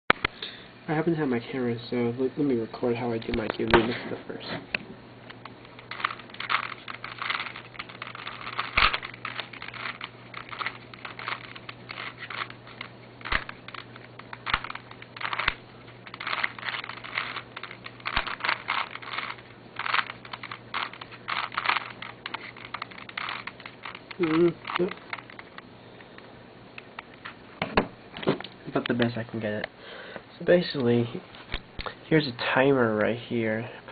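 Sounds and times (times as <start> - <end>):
puzzle cube layers clacking: 5.4 - 25.6.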